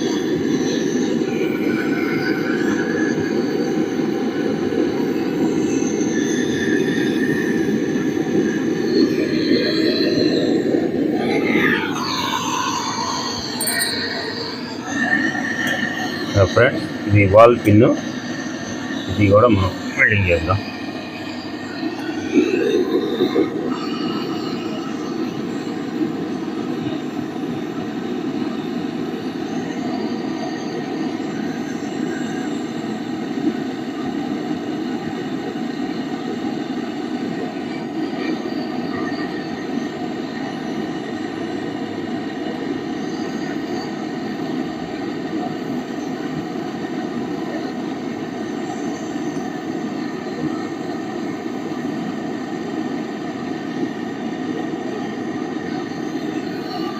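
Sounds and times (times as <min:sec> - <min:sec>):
torch flame hissing: 0:05.8 - 0:26.0.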